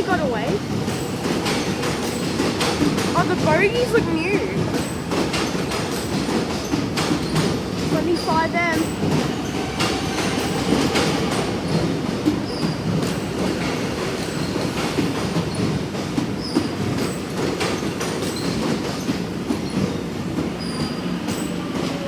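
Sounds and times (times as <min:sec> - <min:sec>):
train rumbling past: 0:00.0 - 0:22.0
wheels clicking over rail joints: 0:00.0 - 0:22.0
high wheel squeals: 0:19.5 - 0:21.6.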